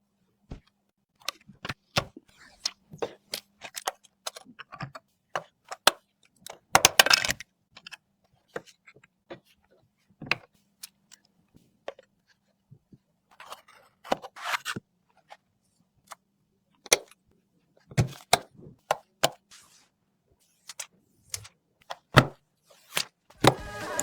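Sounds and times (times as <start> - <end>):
computer parts clicking and knocking: 3.8 - 7.4.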